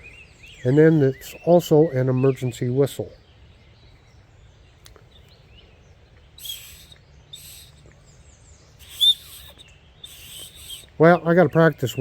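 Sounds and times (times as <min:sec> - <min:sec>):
breathy whistle puffs: 0:06.4 - 0:07.8, 0:08.8 - 0:11.0.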